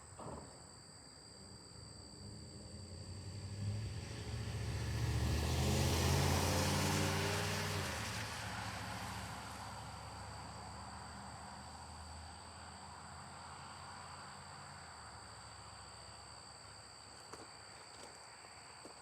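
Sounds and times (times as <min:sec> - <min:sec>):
crickets chirping: 0:00.0 - 0:04.6, 0:09.0 - 0:19.0
vehicle passing by: 0:02.9 - 0:11.2.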